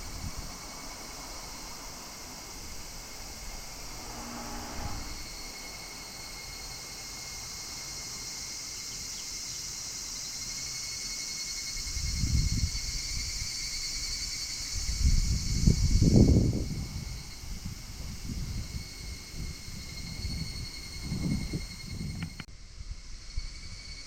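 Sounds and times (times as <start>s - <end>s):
low rumbling noise: 0.0s - 6.4s
cicadas calling: 0.0s - 24.0s.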